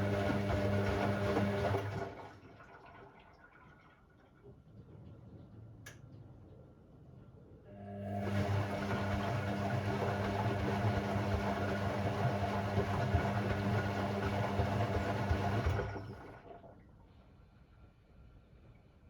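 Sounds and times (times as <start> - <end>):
washing machine churning: 0.0 - 4.3, 7.9 - 16.8.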